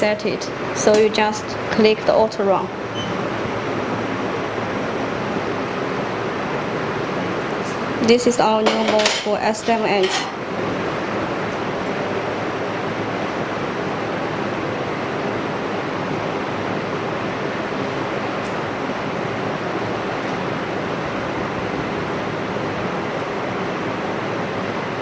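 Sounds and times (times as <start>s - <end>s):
vacuum pump running: 0.0s - 25.0s.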